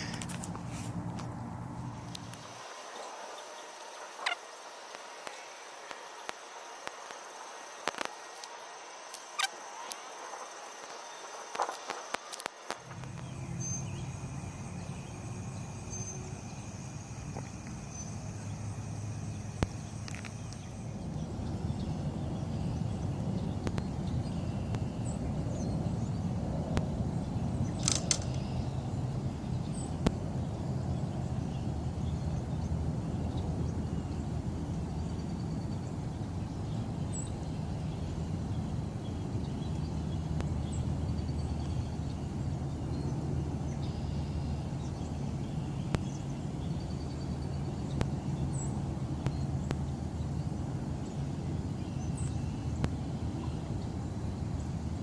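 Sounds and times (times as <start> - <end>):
steady low hum: 0.0 - 55.0
faint bird chirps: 1.8 - 26.3, 27.1 - 54.8
brief sharp rattle: 27.8 - 28.6.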